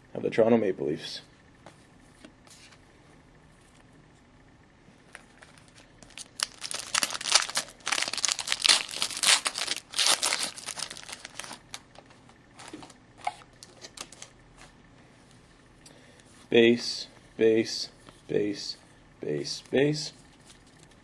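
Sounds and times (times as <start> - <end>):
plastic wrapper tearing and crinkling: 5.6 - 11.8.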